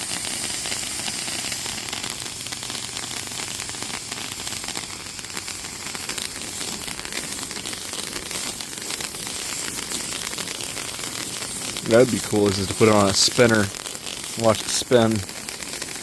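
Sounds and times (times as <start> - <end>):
firework fountain hissing: 0.0 - 16.0
sparks crackling: 0.0 - 16.0.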